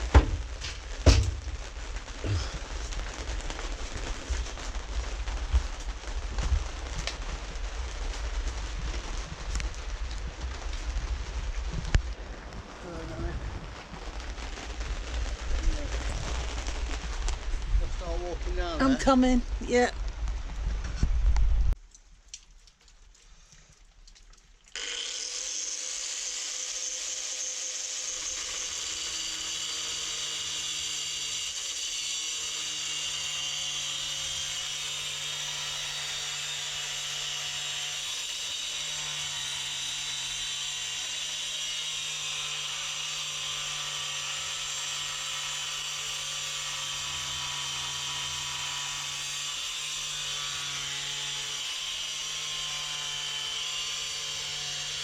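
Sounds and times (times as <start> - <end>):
angle grinder cutting metal: 24.8 - 55.0.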